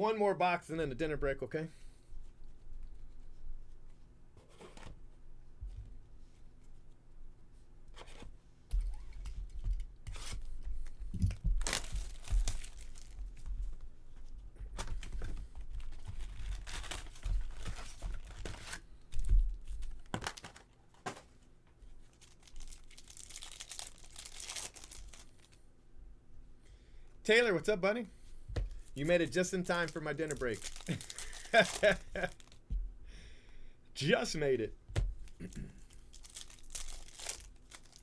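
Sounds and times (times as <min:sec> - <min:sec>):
rustling of wrapping: 0:08.8 - 0:25.6, 0:28.7 - 0:32.7, 0:35.2 - 0:38.0
paper tearing and crinkling: 0:11.6 - 0:13.2, 0:15.9 - 0:18.8, 0:22.1 - 0:25.5, 0:28.9 - 0:32.6, 0:35.9 - 0:38.0.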